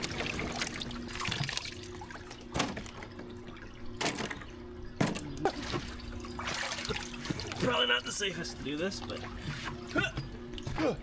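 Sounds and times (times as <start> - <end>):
water splashing: 0.0 - 4.4, 5.4 - 9.9.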